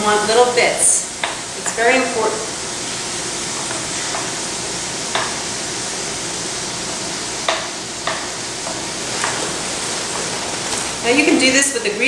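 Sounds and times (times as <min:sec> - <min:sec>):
sausage sizzling in a skillet: 0:00.8 - 0:11.5.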